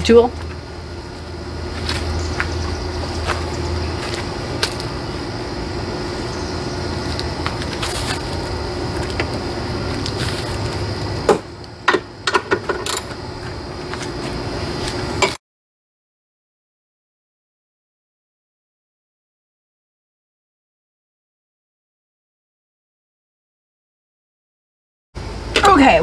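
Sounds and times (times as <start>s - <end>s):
steady background hum: 0.0s - 15.4s, 25.2s - 26.0s.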